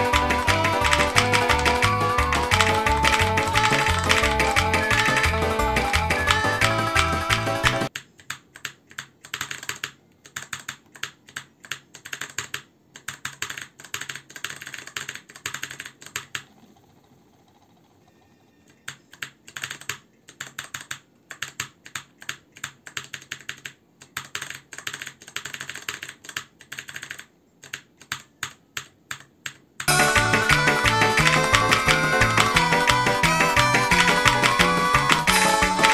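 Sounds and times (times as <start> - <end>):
music: 0.0 - 7.9, 29.9 - 35.9
clicky mechanical keyboard typing: 0.0 - 16.6, 18.7 - 35.9.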